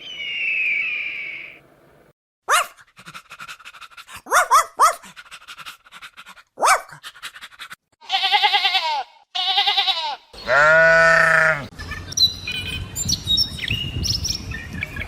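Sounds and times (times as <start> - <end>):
dog yelping: 2.5 - 2.8, 4.2 - 5.2, 6.6 - 7.0
dog panting: 5.0 - 7.8
wavering bleat: 8.0 - 11.7.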